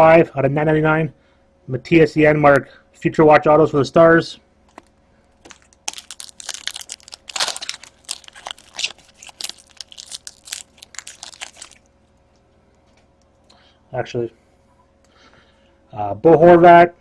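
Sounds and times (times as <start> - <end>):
card packaging crinkling: 4.7 - 11.9.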